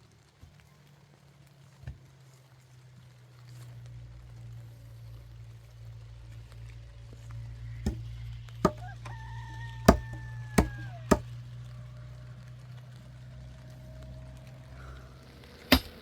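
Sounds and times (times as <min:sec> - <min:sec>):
sharp knocks: 0:07.9 - 0:08.1, 0:09.9 - 0:11.3.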